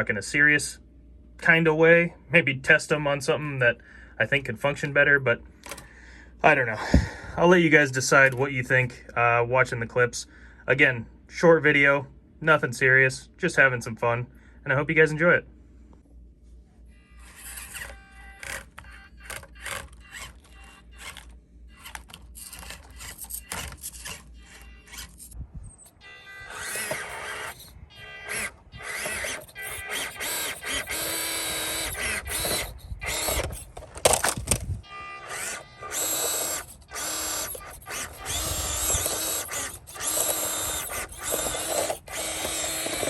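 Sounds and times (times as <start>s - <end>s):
electric motor whining: 16.9s - 43.0s.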